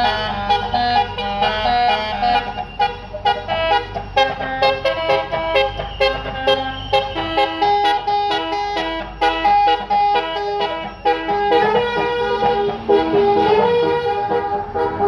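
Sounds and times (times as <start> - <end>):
bus engine rumbling: 0.0 - 15.0
musical air horn tune: 0.0 - 15.0.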